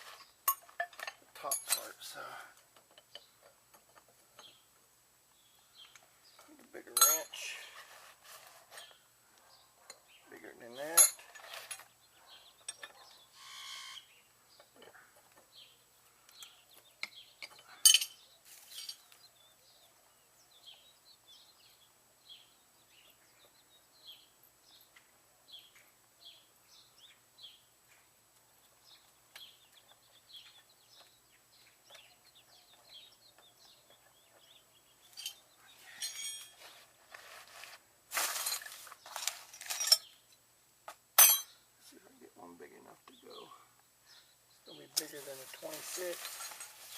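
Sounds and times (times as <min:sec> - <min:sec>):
metal wrenches clinking and clattering: 0:00.5 - 0:02.0, 0:06.9 - 0:07.4, 0:10.9 - 0:11.9, 0:17.4 - 0:19.1, 0:35.1 - 0:35.4, 0:36.0 - 0:36.6, 0:39.6 - 0:40.1, 0:41.2 - 0:41.5
faint bird chirps: 0:11.4 - 0:27.7.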